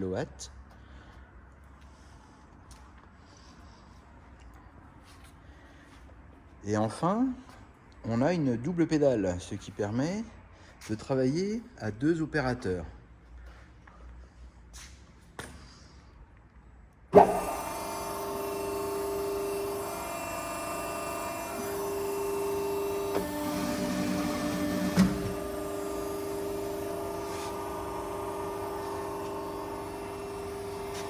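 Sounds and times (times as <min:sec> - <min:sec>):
hydraulic power unit humming: 0:17.1 - 0:31.0.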